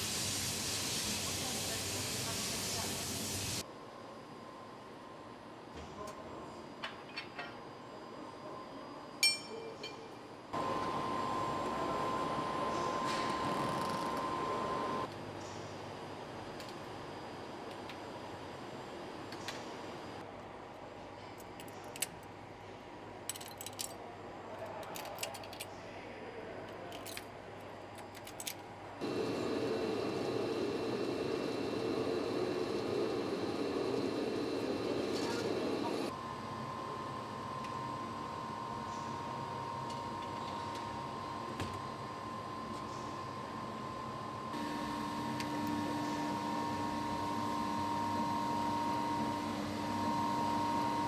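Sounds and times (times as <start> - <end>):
faint high whine: 7.8 - 15.1, 29.0 - 51.0
sharp metallic clink: 9.2 - 10.0
steady machine noise: 29.0 - 36.2, 44.5 - 51.0
faint steady hum: 29.0 - 51.0.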